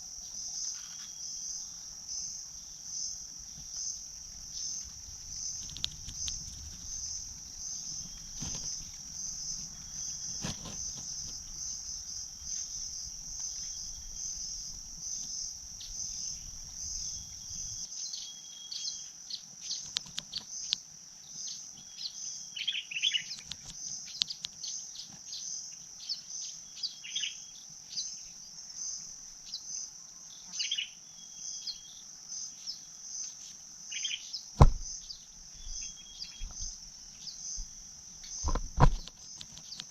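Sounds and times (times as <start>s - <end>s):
pulsing insect chorus: 0.0s - 39.9s
sharp knock: 34.6s - 34.9s.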